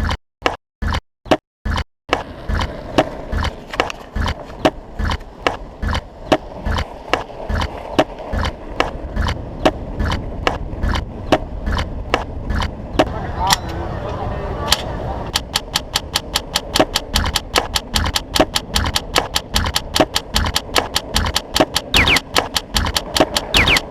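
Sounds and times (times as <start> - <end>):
street noise: 1.7 - 23.9
rhythmic sharp knocks: 15.4 - 23.9.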